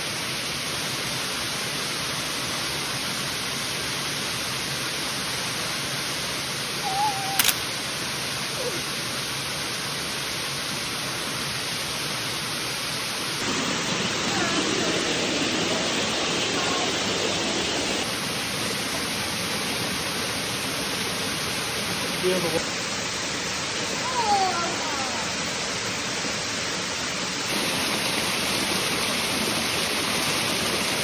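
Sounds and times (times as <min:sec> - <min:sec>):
waterfall rushing: 0:00.0 - 0:31.0
sharp click: 0:07.2 - 0:07.7.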